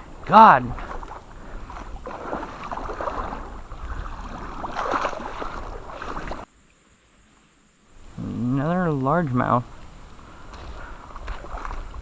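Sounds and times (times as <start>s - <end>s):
water splashing and sloshing: 0.0s - 6.5s, 9.7s - 12.0s
low rumble of wind: 0.0s - 12.0s.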